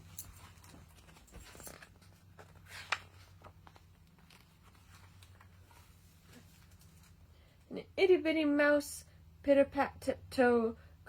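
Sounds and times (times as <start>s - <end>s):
book pages rustling and turning: 0.0s - 7.2s.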